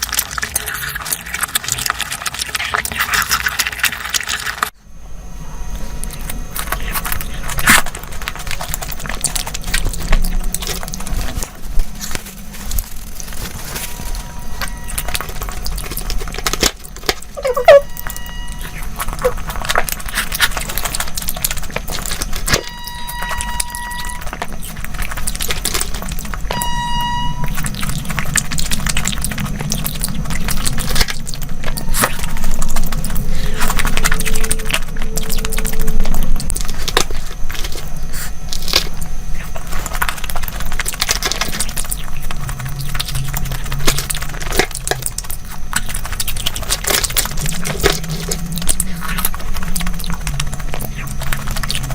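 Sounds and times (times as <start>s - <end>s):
chewing and crunching: 0.0s - 4.8s, 5.6s - 51.9s
low hum: 0.0s - 51.9s
horn-like beeps: 13.8s - 15.4s, 17.4s - 19.4s, 22.5s - 24.5s, 26.5s - 27.7s.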